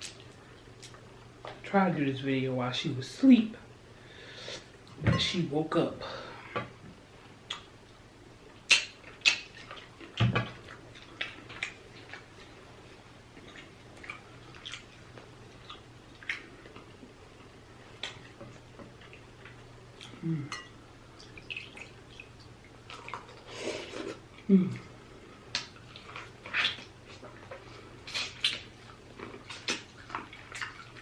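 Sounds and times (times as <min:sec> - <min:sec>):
wet chewing and smacking: 0:08.5 - 0:20.2, 0:21.1 - 0:23.5, 0:25.5 - 0:31.0.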